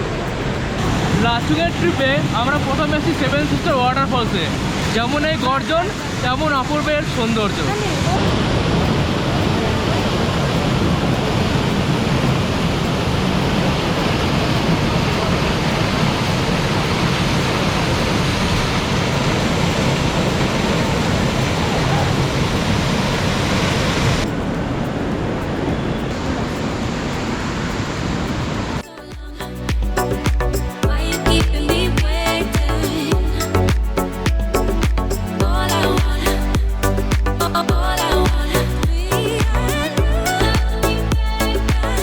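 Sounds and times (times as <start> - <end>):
waterfall roaring: 0.0 - 29.8
music: 28.8 - 42.0.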